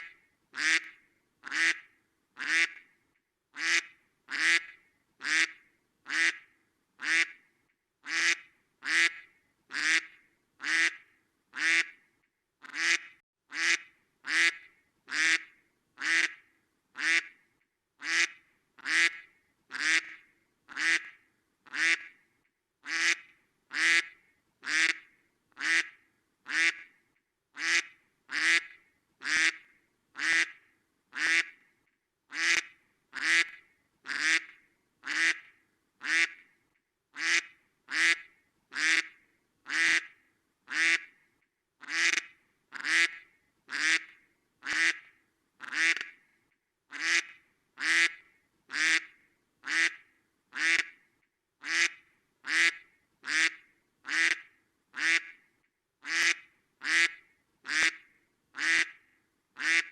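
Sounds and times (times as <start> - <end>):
duck quacking: 0.0 - 2.8, 3.6 - 6.4, 7.0 - 7.4, 8.0 - 11.0, 11.6 - 12.0, 12.6 - 16.4, 17.0 - 17.4, 18.0 - 21.1, 21.7 - 22.1, 22.8 - 25.0, 25.6 - 26.9, 27.6 - 29.6, 30.2 - 30.6, 31.2 - 31.6, 32.3 - 36.4, 37.2 - 39.1, 39.7 - 40.1, 40.7 - 41.1, 41.8 - 46.2, 46.9 - 50.0, 50.6 - 50.9, 51.6 - 54.4, 55.0 - 55.4, 56.0 - 58.0, 58.6 - 59.0, 59.6 - 59.9.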